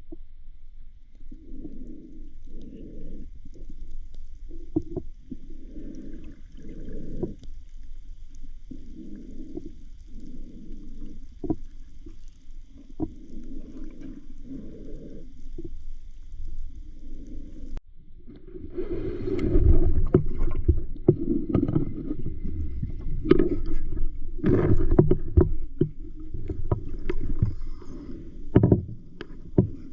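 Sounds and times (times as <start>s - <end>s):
muffled underwater whooshes: 16.5s - 29.9s.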